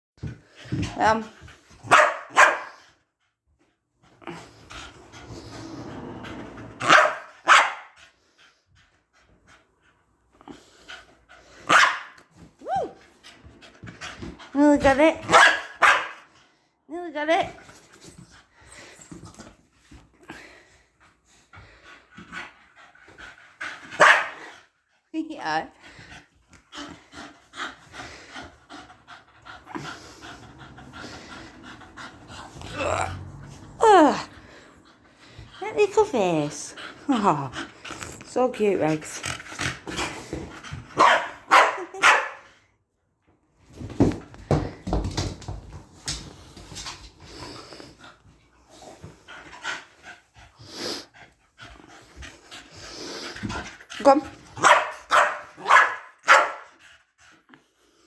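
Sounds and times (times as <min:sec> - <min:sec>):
dog barking: 0:01.9 - 0:02.8, 0:06.8 - 0:07.9, 0:11.7 - 0:12.2, 0:15.3 - 0:16.2, 0:24.0 - 0:24.4, 0:41.0 - 0:42.4, 0:54.6 - 0:56.7
dog panting: 0:17.5 - 0:42.5, 0:44.1 - 0:58.0.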